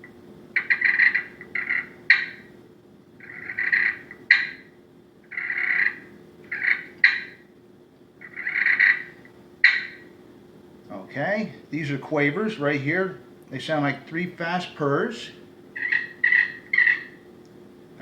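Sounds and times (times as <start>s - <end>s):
turkey call purrs: 0.0s - 2.5s, 3.2s - 7.5s, 8.2s - 10.2s, 14.2s - 17.3s
turkey call clucks: 0.6s - 2.5s, 3.2s - 4.7s, 5.3s - 7.4s, 8.2s - 10.1s, 15.8s - 17.2s.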